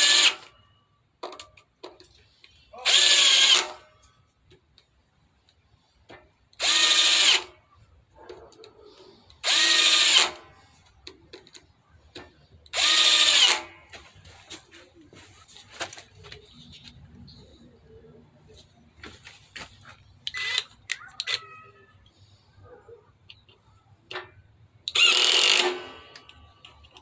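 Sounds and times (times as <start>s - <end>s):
impact driver whine: 12.8s - 13.8s, 24.9s - 26.2s.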